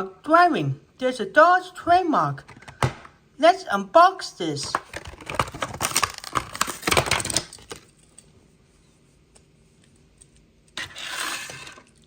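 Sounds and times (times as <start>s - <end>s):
plastic and cardboard tearing: 4.9s - 7.6s.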